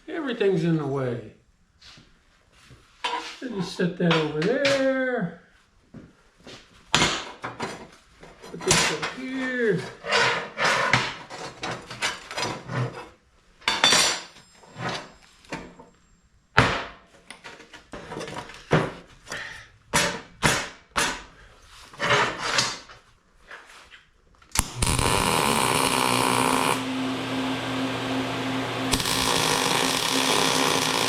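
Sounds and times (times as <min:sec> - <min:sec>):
metal parts and tools clattering: 0:10.1 - 0:15.9, 0:17.3 - 0:19.1
electric power tool humming: 0:24.6 - 0:31.0.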